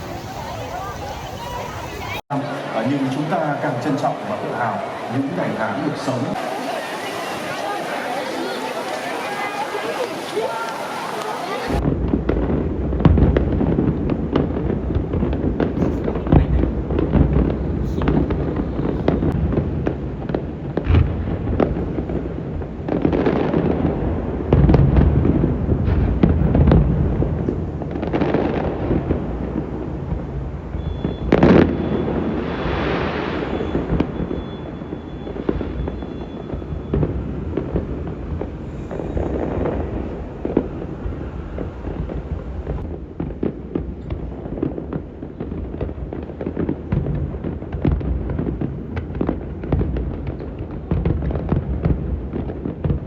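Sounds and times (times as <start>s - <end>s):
fireworks booming: 0.0s - 53.0s
fireworks crackling: 0.0s - 53.0s.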